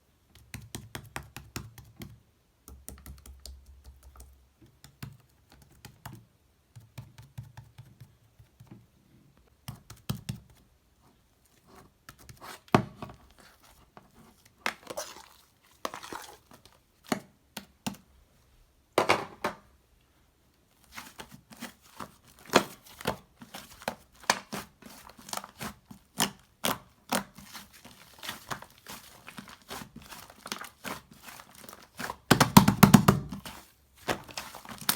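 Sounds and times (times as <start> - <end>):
slime squelching: 13.3 - 17.2, 20.9 - 34.9.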